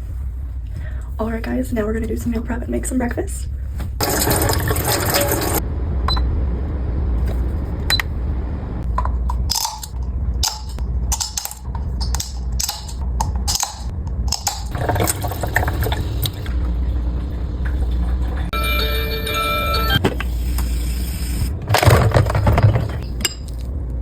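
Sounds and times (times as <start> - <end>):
steady low rumble: 0.0 - 18.8
dishes and utensils clinking: 4.0 - 5.6, 21.8 - 23.7.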